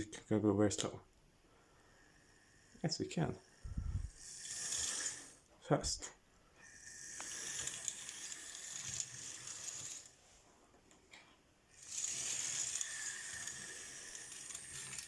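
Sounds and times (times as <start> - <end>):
model train motor whine: 1.9 - 5.5, 6.6 - 10.2, 11.7 - 15.0.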